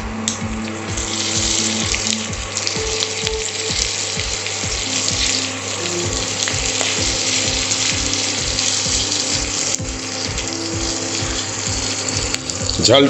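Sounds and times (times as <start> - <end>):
background music with beat: 0.0 - 13.0
onions frying in hot oil: 3.4 - 12.7.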